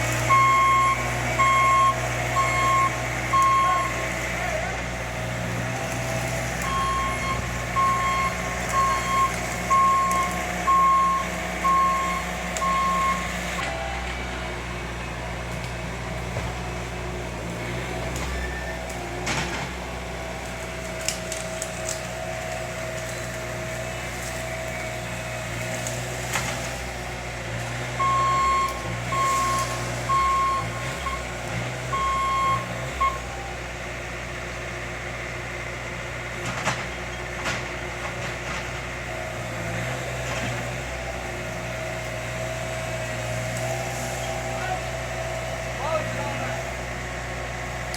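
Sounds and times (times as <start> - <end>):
heavy vehicle engine running: 0.0 - 47.9
reversing alarm beeping: 0.2 - 4.0, 6.6 - 14.1, 28.0 - 33.5.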